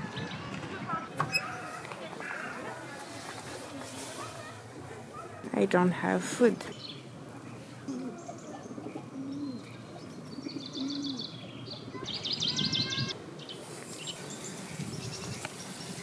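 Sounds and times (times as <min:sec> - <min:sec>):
small birds chirping: 0:06.5 - 0:16.0
pigeons cooing: 0:07.3 - 0:12.0.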